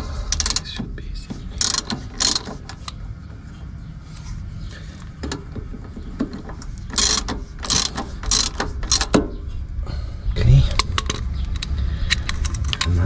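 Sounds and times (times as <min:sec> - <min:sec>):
steady low hum: 0:00.0 - 0:13.0
wrench scraping clicks: 0:00.3 - 0:00.8, 0:01.6 - 0:03.0, 0:06.2 - 0:09.2, 0:10.7 - 0:13.0.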